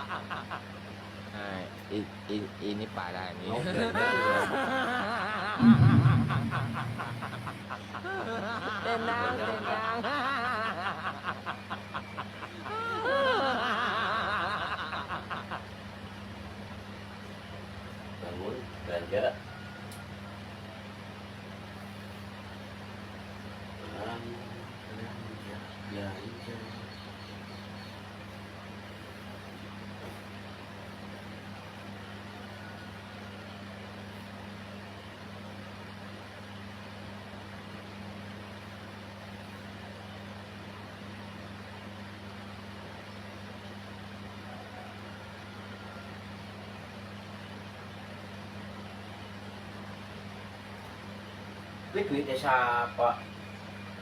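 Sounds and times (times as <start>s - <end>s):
low machine hum: 0.0s - 54.0s
person laughing: 3.5s - 15.7s.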